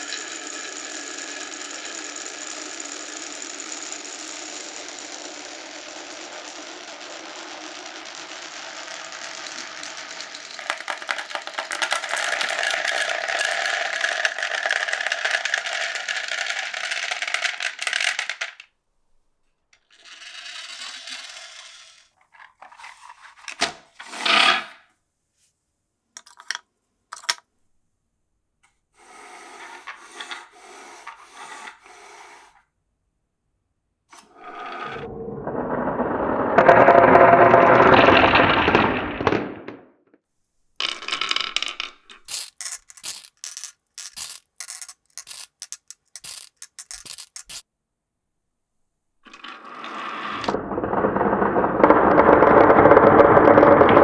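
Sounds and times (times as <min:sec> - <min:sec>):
marbles clicking and clacking: 0:00.0 - 0:18.6, 0:26.2 - 0:27.4, 0:40.8 - 0:47.6
marbles rolling on tracks: 0:00.0 - 0:18.7, 0:20.0 - 0:22.1, 0:26.2 - 0:27.4, 0:34.4 - 0:39.8, 0:40.8 - 0:47.6, 0:49.3 - 0:54.0.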